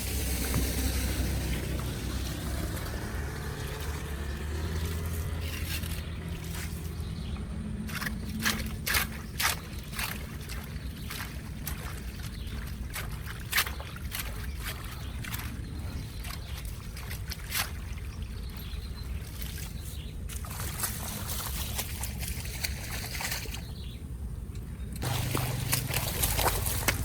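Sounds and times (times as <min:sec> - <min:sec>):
water trickling into drain: 0:00.0 - 0:07.5
low rumble: 0:00.0 - 0:09.3.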